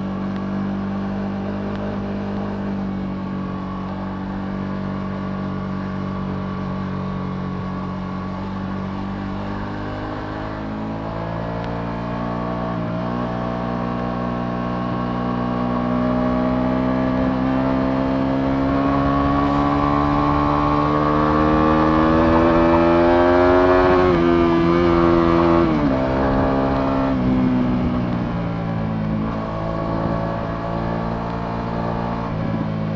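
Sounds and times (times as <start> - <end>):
motorcycle engine accelerating: 0.0 - 32.9.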